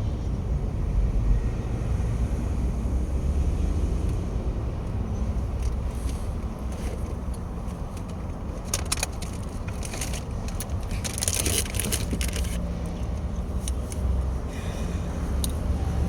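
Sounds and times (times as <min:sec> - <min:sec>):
low vehicle rumble: 0:00.0 - 0:16.0
clicking and rattling: 0:05.5 - 0:14.2.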